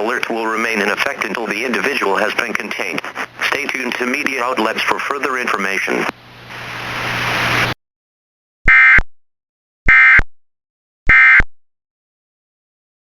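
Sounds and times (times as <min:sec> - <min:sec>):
static hiss: 0:00.2 - 0:07.8.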